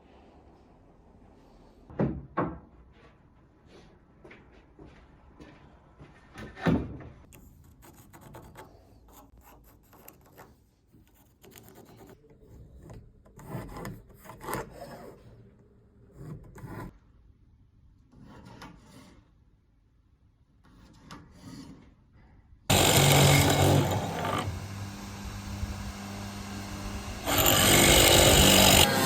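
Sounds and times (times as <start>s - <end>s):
wood rubbing and scraping: 22.7s - 29.0s.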